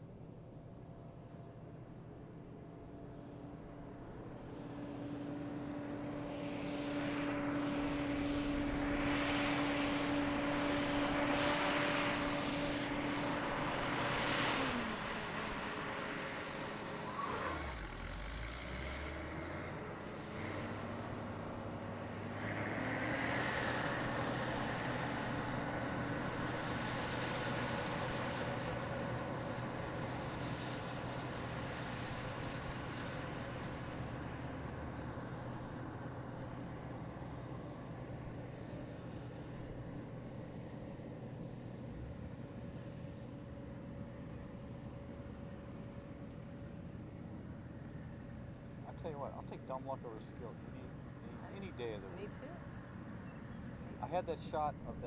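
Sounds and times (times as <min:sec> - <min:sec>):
combine harvester engine hum: 0:00.0 - 0:55.0
engine note with faint whine: 0:00.0 - 0:55.0.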